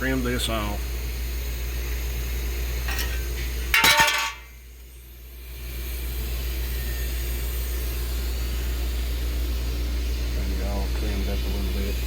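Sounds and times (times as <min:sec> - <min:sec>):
steady low hum: 0:00.0 - 0:12.0
metallic clank with ringing: 0:02.9 - 0:04.5.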